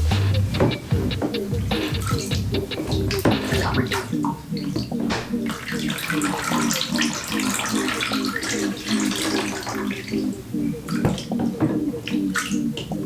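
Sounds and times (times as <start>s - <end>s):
water splashing in a bathtub: 2.0s - 13.0s.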